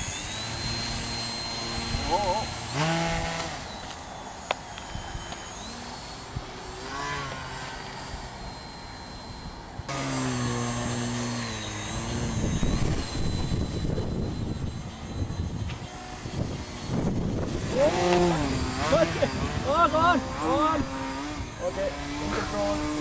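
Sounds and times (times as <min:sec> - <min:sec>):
model plane motor whining: 0:00.0 - 0:23.0
wind buffeting microphone: 0:11.8 - 0:23.0.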